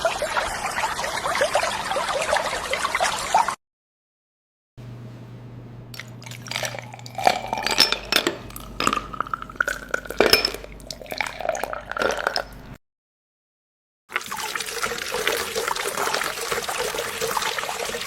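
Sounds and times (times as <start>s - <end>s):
low steady hum: 4.8s - 12.8s
water dripping and splashing: 14.1s - 18.0s.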